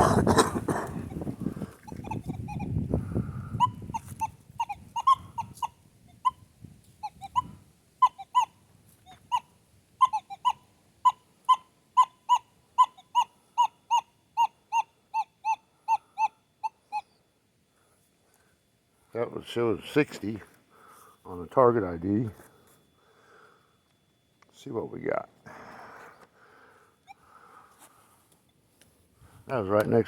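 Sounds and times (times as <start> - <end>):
metal detector beeps: 3.6 - 6.4.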